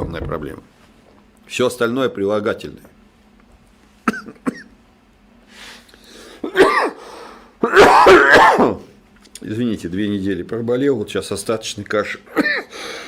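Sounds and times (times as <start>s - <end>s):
man coughing: 4.0s - 4.8s, 6.4s - 7.0s, 7.6s - 8.9s, 12.3s - 12.8s.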